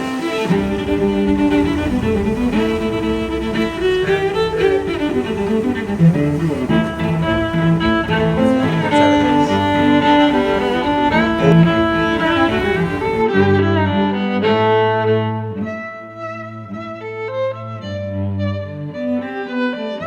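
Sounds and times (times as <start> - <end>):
bowed strings melody: 0.0 - 20.0.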